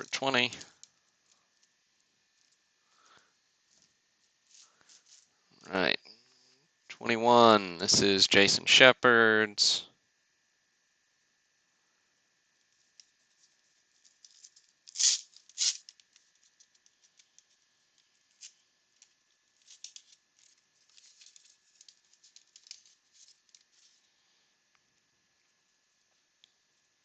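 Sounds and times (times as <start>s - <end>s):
cards sliding and shuffling: 13.4s - 16.2s
card pack ripping open: 14.3s - 16.0s.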